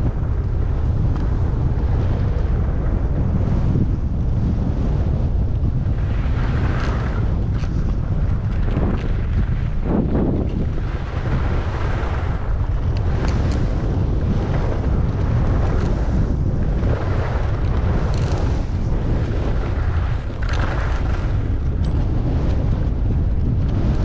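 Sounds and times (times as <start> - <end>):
wind buffeting microphone: 0.0 - 24.0
skis scraping on snow: 4.5 - 23.1.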